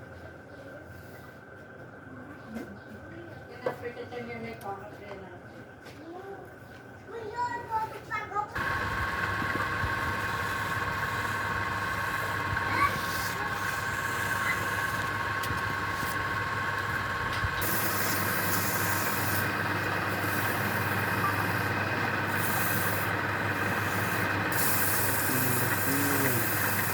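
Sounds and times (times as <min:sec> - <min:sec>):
machine humming and whining: 0:08.6 - 0:26.9
high hiss: 0:22.3 - 0:26.9.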